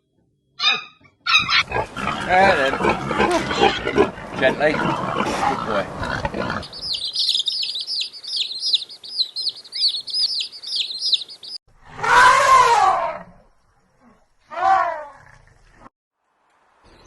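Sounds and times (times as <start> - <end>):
small bird chirping: 6.6 - 11.6
animal call rising and falling: 11.8 - 13.4.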